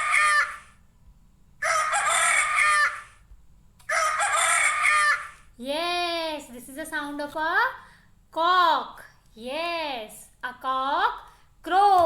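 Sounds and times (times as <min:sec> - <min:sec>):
rooster crowing: 0:01.6 - 0:03.2, 0:03.9 - 0:05.4.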